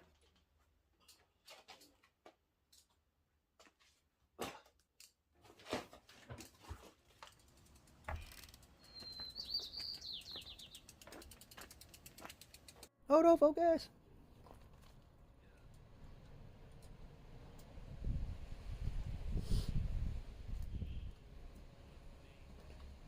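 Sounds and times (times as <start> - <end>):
bird chirping trill: 8.8 - 11.1.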